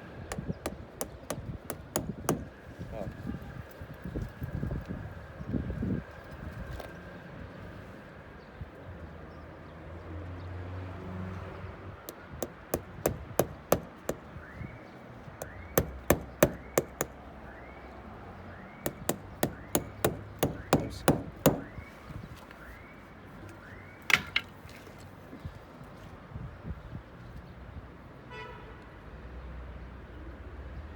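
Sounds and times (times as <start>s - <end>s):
hammer striking a stake: 0.3s - 2.6s, 12.1s - 14.5s, 15.4s - 17.2s, 18.9s - 21.8s, 24.1s - 24.5s.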